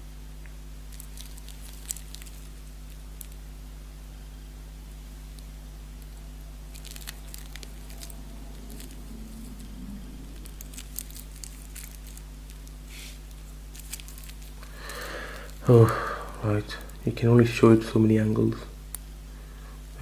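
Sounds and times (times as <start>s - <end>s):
low electrical hum: 0.0s - 20.0s
wristwatch handling rustles and clicks: 0.9s - 3.4s, 6.7s - 15.9s.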